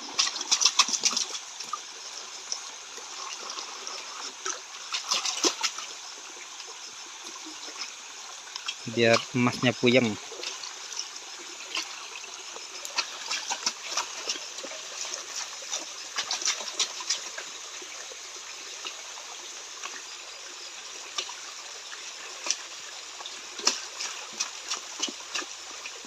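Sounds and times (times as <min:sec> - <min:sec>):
panning dish splashing water: 0:00.0 - 0:01.8, 0:03.1 - 0:06.0, 0:08.6 - 0:18.1, 0:22.4 - 0:26.0
stream water trickling: 0:00.0 - 0:26.0.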